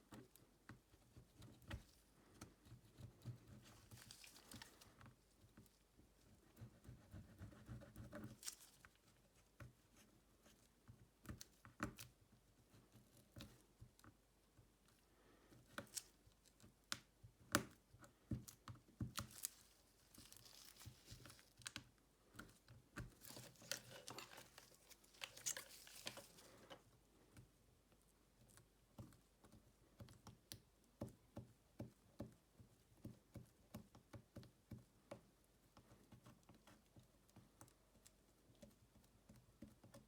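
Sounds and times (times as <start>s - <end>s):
soft tearing and scraping: 3.5s - 5.1s, 19.2s - 21.8s, 23.1s - 26.8s.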